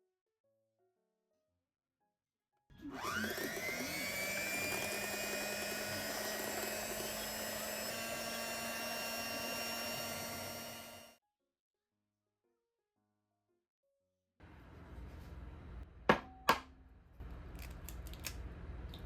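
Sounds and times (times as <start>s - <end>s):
kitchen appliance motor whine: 2.7s - 11.2s.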